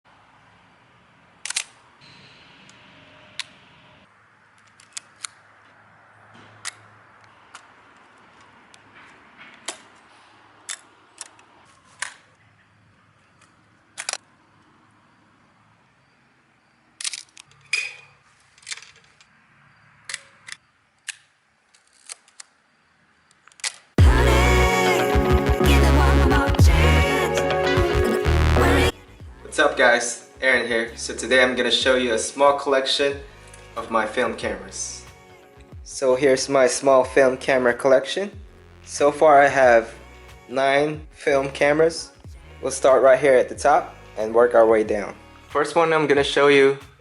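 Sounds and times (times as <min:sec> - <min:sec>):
camera shutter clicks: 0:01.4 - 0:01.8.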